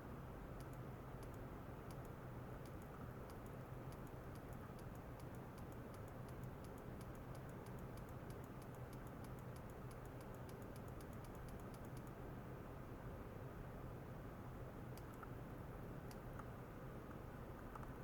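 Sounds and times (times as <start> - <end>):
steady low hum: 0.0 - 18.0
rapid light ticking: 0.5 - 12.2, 14.9 - 15.4, 16.0 - 16.5.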